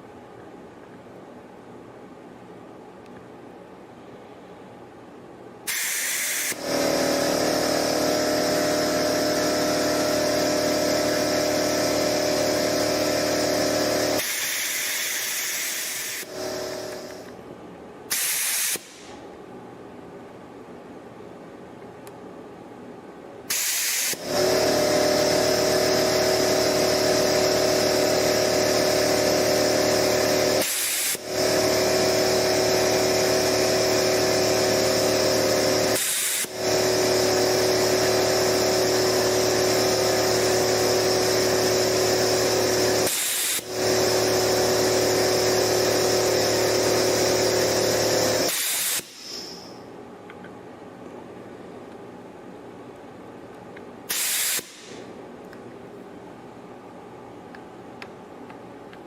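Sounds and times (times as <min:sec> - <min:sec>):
desoldering gun air rush: 0:05.7 - 0:17.4, 0:18.1 - 0:19.2, 0:23.5 - 0:49.9, 0:54.1 - 0:55.1.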